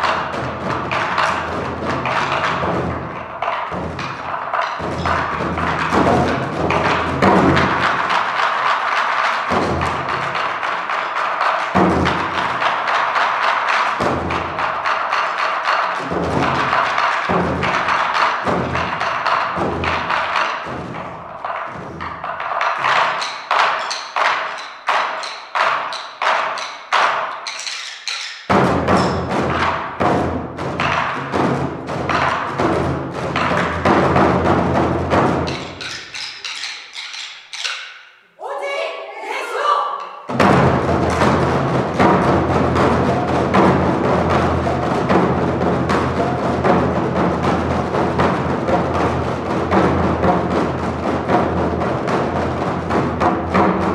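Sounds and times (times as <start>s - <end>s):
barrel drums beaten fast: 0.0s - 53.9s
sharp stick strokes: 22.9s - 29.2s, 35.5s - 38.4s
deep drum strikes: 28.5s - 35.8s, 40.3s - 53.9s.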